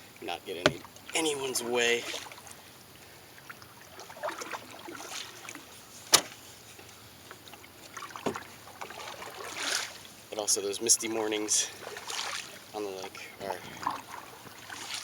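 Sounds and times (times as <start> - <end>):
paddle splashing through water: 0.6 - 2.6, 3.4 - 6.5, 7.2 - 10.3, 11.4 - 12.8, 13.4 - 15.0.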